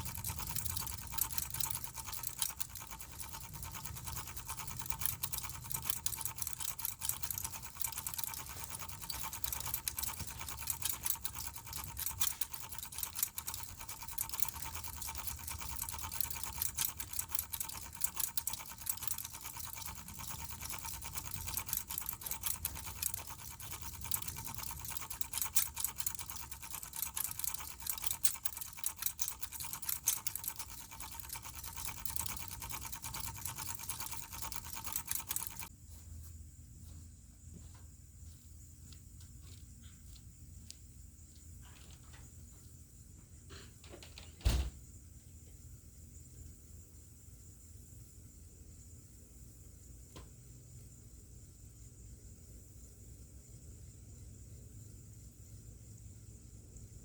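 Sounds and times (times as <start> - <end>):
crackling rattle: 0.0 - 35.7
ceiling fan hum and whine: 0.0 - 57.0.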